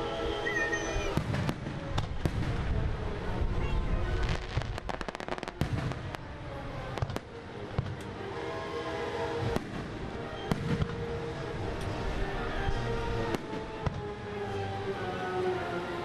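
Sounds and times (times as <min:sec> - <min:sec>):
fireworks bangs: 0:01.0 - 0:02.9, 0:04.1 - 0:08.1, 0:09.4 - 0:11.2, 0:13.2 - 0:14.1
fireworks crackling pops: 0:01.1 - 0:02.9, 0:03.7 - 0:08.2, 0:09.4 - 0:11.2, 0:11.8 - 0:12.0, 0:12.7 - 0:14.1.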